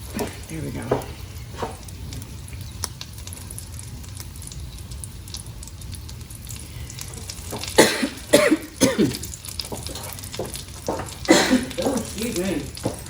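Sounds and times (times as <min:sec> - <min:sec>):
flatbread sizzling in a frying pan: 0:00.0 - 0:13.0
woman coughing: 0:07.8 - 0:09.3, 0:11.3 - 0:12.1.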